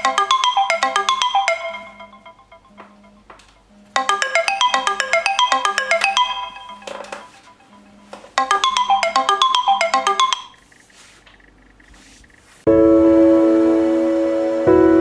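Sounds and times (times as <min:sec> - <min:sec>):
chiming alarm tone: 0:00.0 - 0:10.7.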